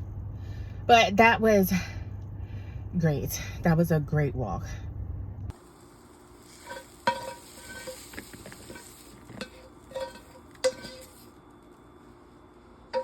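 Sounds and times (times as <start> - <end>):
small hard objects clinking: 5.8 - 11.3.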